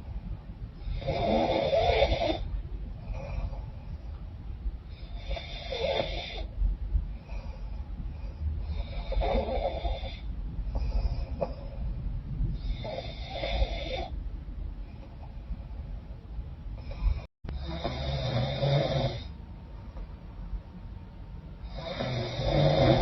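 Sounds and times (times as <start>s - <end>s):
faint breaths: 0.0s - 23.0s
woman snoring: 0.8s - 2.5s, 5.0s - 6.5s, 8.7s - 10.3s, 12.6s - 14.1s, 16.8s - 19.3s, 21.6s - 23.0s.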